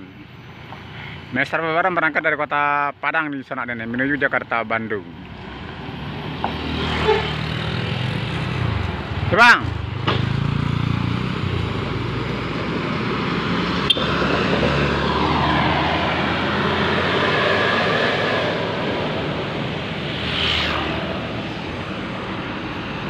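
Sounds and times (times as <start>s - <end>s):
bus passing by: 5.4s - 23.0s.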